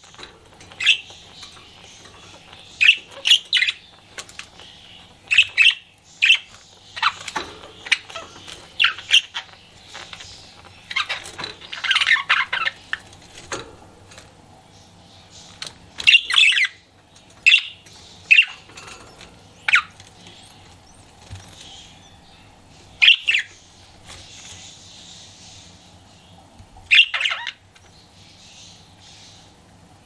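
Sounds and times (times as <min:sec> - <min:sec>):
soft bird chatter: 0:00.0 - 0:30.0
budgerigar chirping: 0:00.8 - 0:13.0, 0:16.0 - 0:18.7, 0:21.7 - 0:23.7, 0:26.9 - 0:27.6.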